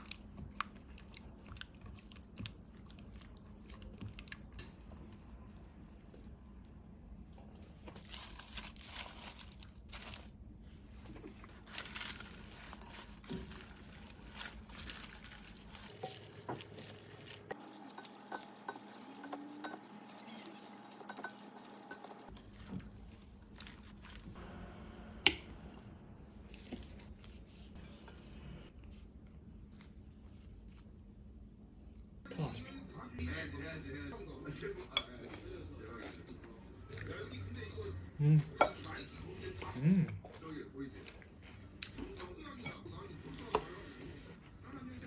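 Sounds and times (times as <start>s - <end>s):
soft squishing: 0.0s - 24.4s, 25.5s - 32.2s
rustling and crinkling: 7.5s - 24.4s
utensils and dishes clicking: 15.9s - 22.3s.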